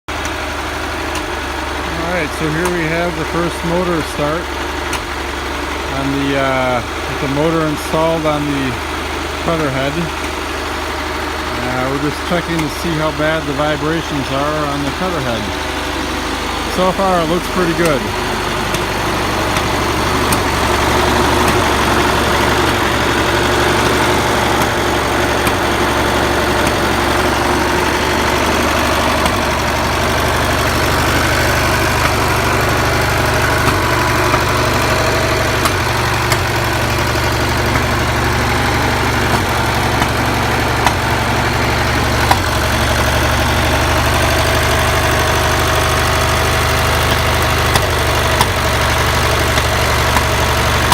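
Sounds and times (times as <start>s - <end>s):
engine running steadily: 0.1s - 50.9s.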